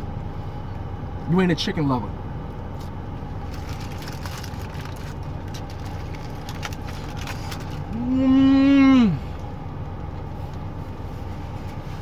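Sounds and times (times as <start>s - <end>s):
steady low hum: 0.0s - 12.0s
crunching and smacking while eating: 2.7s - 8.0s.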